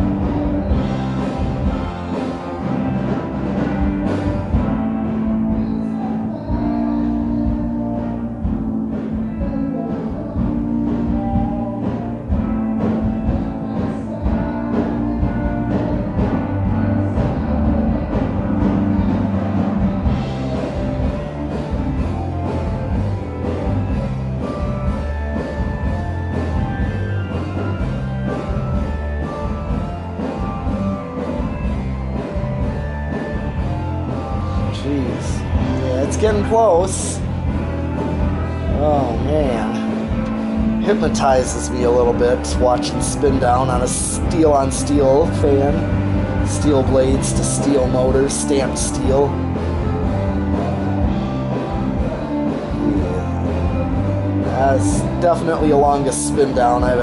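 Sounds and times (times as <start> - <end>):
rock music: 0.0 - 57.0
steady drum beat: 0.0 - 57.0
stepping bass line: 0.0 - 57.0
held synth notes changing pitch: 14.4 - 57.0.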